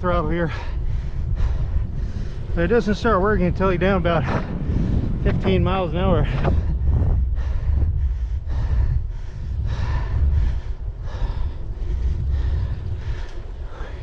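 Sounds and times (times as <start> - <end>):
wind buffeting microphone: 0.0 - 14.0
person breathing hard: 0.4 - 2.6, 6.4 - 14.0.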